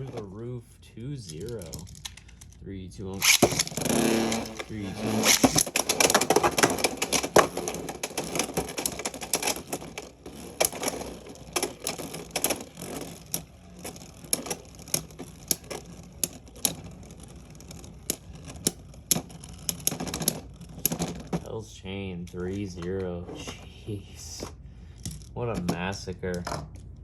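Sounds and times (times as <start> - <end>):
spinning tops clattering: 3.2 - 21.4.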